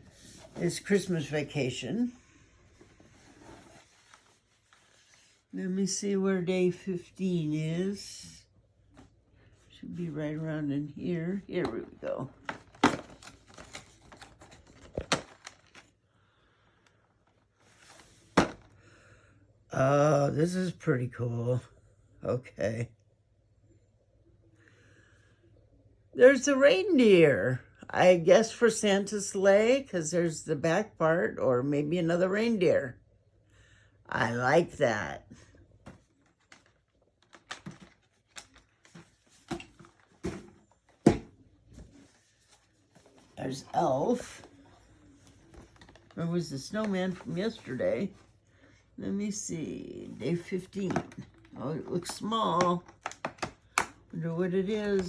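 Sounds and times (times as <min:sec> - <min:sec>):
cardboard handling knocks and clicks: 0:37.3 - 0:41.4.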